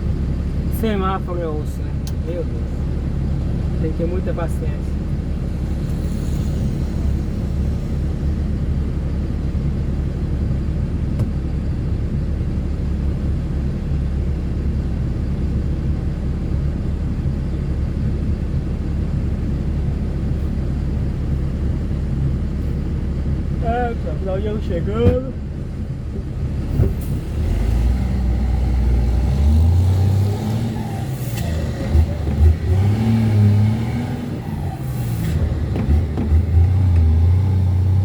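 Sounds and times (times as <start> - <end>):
diesel truck engine idling: 0.0 - 38.0.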